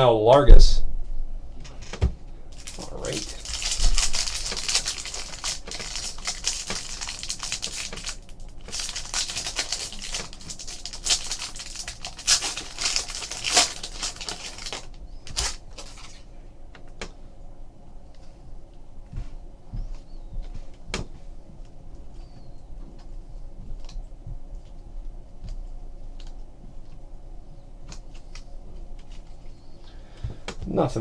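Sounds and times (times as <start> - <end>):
foil wrapper crinkling and tearing: 2.5 - 16.3.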